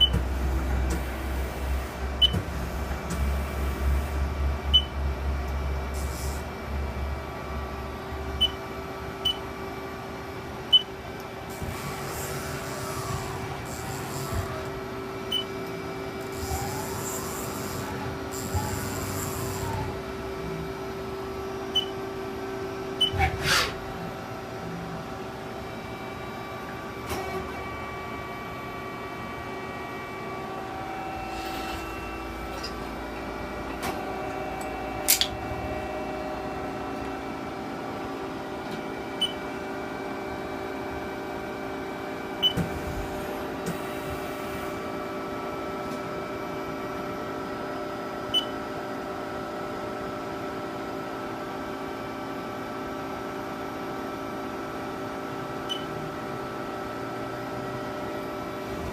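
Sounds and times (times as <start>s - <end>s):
lathe machine hum: 0.3s - 23.0s.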